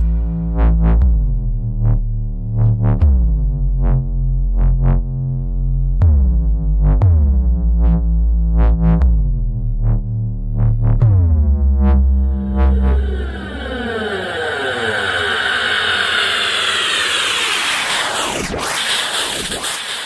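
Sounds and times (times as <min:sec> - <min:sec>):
deep sub-bass tones: 0:00.0 - 0:18.7
synth notes sliding down: 0:11.0 - 0:20.0.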